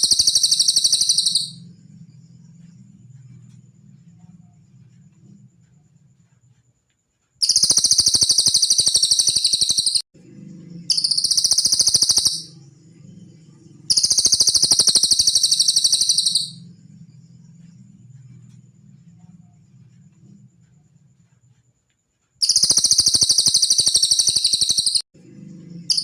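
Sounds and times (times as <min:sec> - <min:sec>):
songbird fast high trills: 0:00.0 - 0:01.6, 0:13.9 - 0:16.6, 0:22.4 - 0:25.0
faint low hum: 0:00.0 - 0:07.4, 0:10.2 - 0:22.4, 0:25.2 - 0:26.0.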